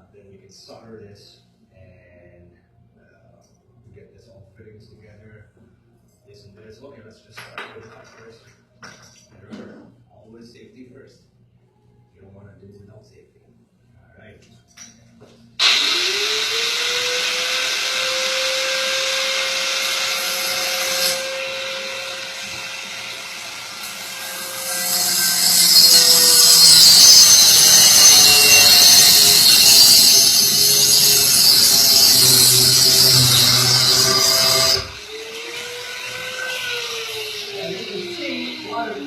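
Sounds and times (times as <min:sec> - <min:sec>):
power tool cutting pipe: 0:15.6 - 0:39.0
power tool motor running: 0:15.6 - 0:39.0.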